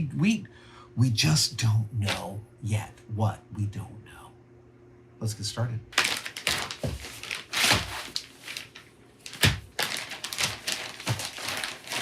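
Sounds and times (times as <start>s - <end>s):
fabric or packaging rustling: 6.0s - 12.0s.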